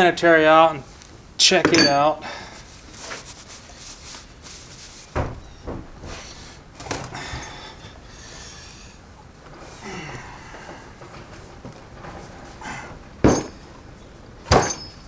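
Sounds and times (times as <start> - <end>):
metal parts and tools clinking: 1.6 - 2.2, 11.0 - 15.0.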